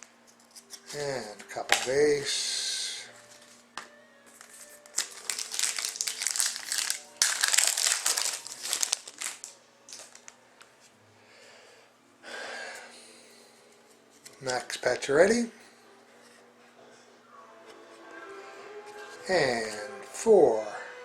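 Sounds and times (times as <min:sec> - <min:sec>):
wrapper crinkling: 0:04.3 - 0:10.4.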